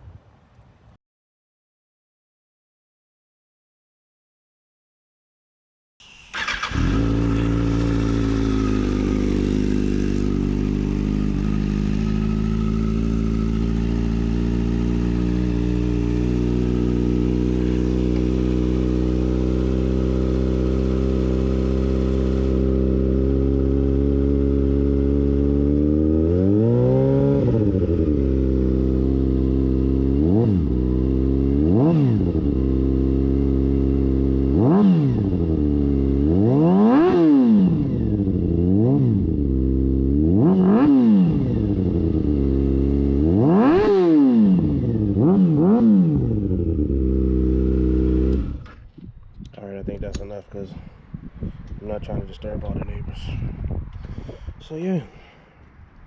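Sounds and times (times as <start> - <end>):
motorcycle throttle revving: 6.0 - 50.3
motorcycle engine idling: 6.4 - 25.6.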